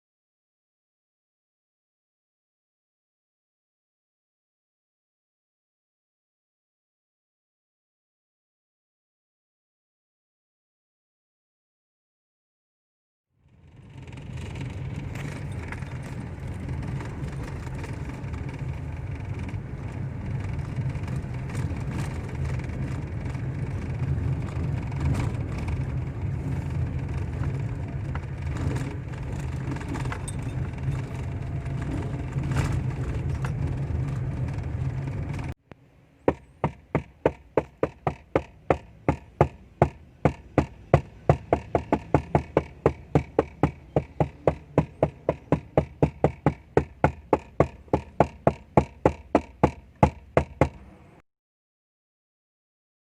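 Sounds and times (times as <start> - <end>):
car engine and road rumble: 13.4 - 51.2
sharp evenly spaced knocks: 36.3 - 50.8
dashboard rattle clicking: 36.3 - 50.9.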